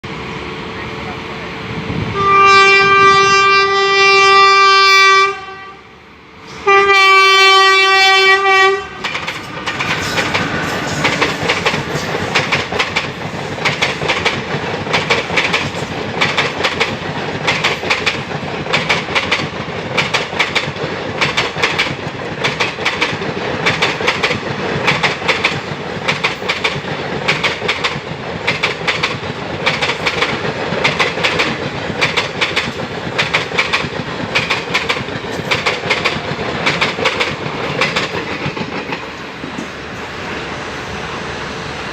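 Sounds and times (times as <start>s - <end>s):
locomotive horn blasts: 2.1s - 5.8s, 6.6s - 9.0s
train wheels clattering over rail joints: 8.8s - 40.2s.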